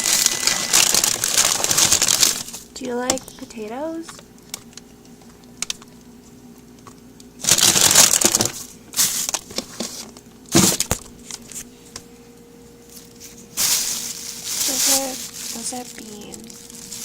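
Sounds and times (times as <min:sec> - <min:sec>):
plastic packaging rustling: 0:00.0 - 0:04.8, 0:07.4 - 0:11.8, 0:12.8 - 0:17.0.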